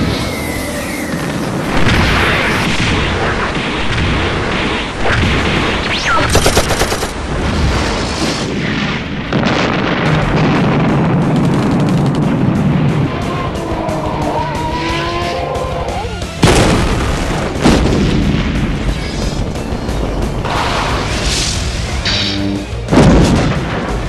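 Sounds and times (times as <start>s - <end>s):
booms and blasts: 0.0s - 13.8s, 16.4s - 24.0s
rapid gunfire: 1.4s - 7.4s, 9.6s - 13.1s
music: 9.9s - 24.0s.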